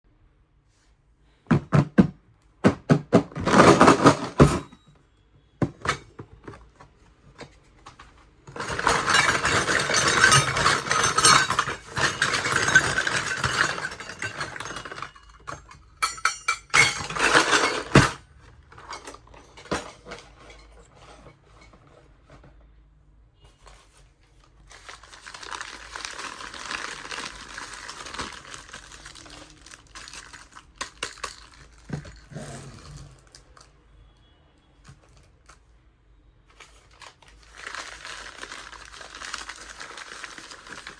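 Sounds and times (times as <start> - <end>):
rustling scraping handling noise: 2.8 - 4.8, 5.7 - 33.9, 36.5 - 40.9
metal kitchenware clinking: 8.5 - 22.0.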